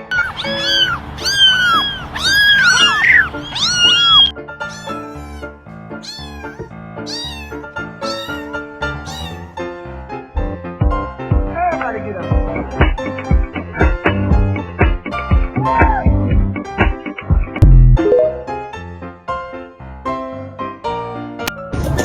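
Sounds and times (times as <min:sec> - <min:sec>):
cat meowing: 0:00.0 - 0:09.6
background music: 0:03.9 - 0:22.0.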